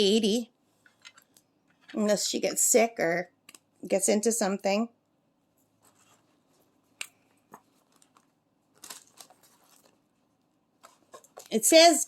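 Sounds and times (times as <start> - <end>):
plastic packets clicking and rustling: 7.0 - 10.1, 10.8 - 11.6.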